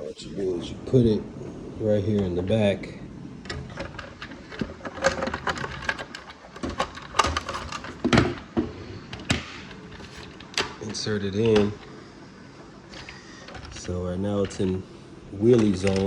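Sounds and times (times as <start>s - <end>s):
plastic clicks and knocks: 3.5s - 11.9s.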